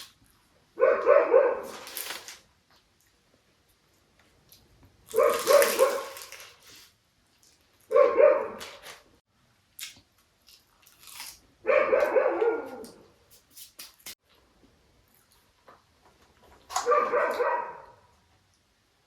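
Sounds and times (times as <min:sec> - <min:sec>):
dogs barking: 0:00.8 - 0:01.8, 0:05.1 - 0:06.3, 0:07.9 - 0:08.8, 0:11.6 - 0:13.0, 0:16.7 - 0:18.1.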